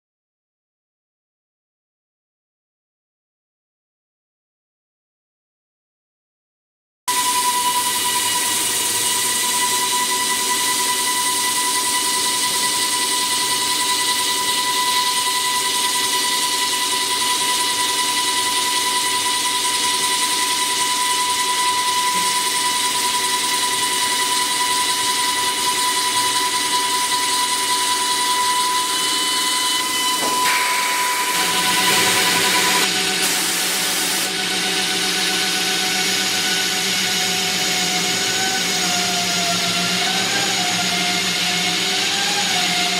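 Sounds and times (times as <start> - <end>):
drilling machine whine: 7.1 - 42.9
hiss: 33.1 - 34.3.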